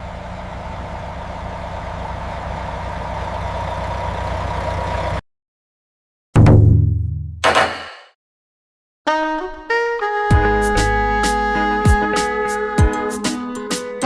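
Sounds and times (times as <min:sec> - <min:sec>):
loud brass-like musical note: 0:09.1 - 0:13.2.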